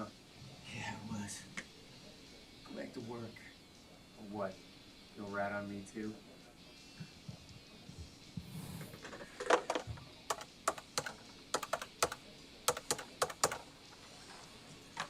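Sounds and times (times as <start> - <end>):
computer keyboard key clicks: 10.3 - 13.6.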